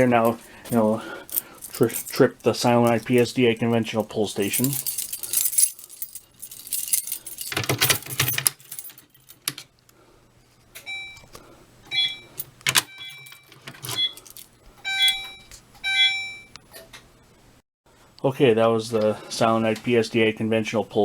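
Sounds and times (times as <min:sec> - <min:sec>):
fire alarm tone pulses: 0:10.8 - 0:11.3, 0:11.9 - 0:14.2, 0:14.8 - 0:16.6
fire alarm pull station rattling: 0:11.9 - 0:16.2.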